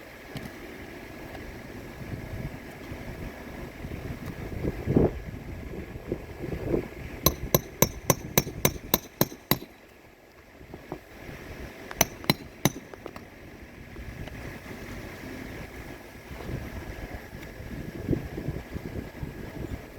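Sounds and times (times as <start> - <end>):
hammer driving nails: 7.3 - 9.8, 12.0 - 13.2.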